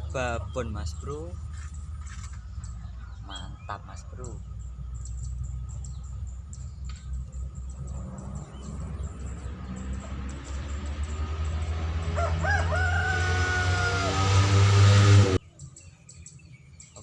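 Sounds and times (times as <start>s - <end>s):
rooster crowing: 11.7s - 14.6s.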